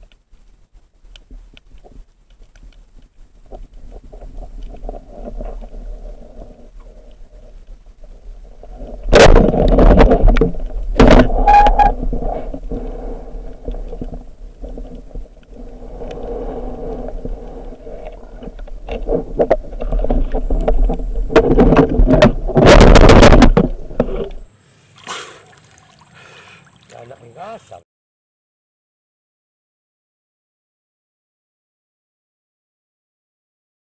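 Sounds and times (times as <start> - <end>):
muffled underwater rumble: 0.0 - 24.4
water splashing: 3.4 - 27.8.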